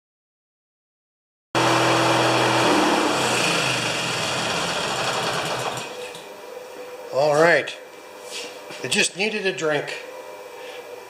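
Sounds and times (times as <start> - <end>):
yard tractor engine running: 1.6 - 5.9.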